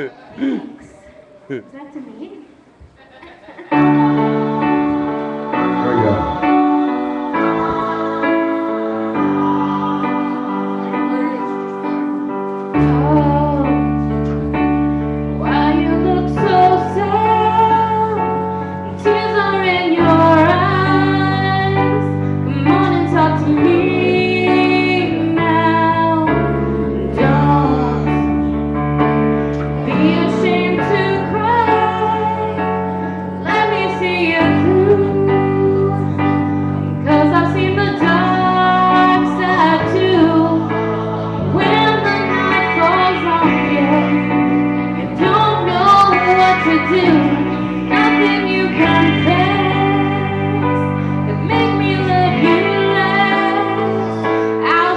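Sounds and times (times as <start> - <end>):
keyboard accompaniment: 3.4 - 54.9
woman singing slow song: 3.7 - 14.3, 15.4 - 28.6, 29.8 - 54.9.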